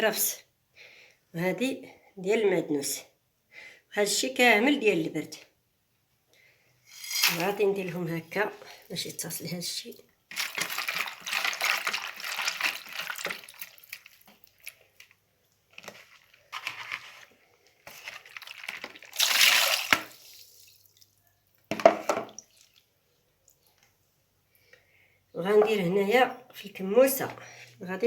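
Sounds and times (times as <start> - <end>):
water splashing and dripping: 9.9 - 14.8, 18.3 - 21.2, 22.2 - 23.8.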